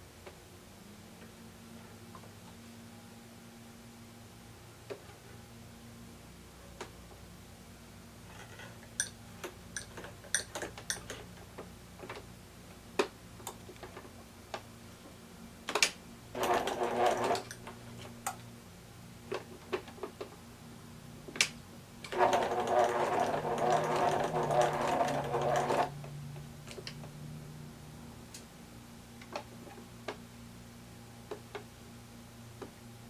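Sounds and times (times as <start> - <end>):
electric sewing machine stitching: 16.3 - 17.7, 22.1 - 26.0.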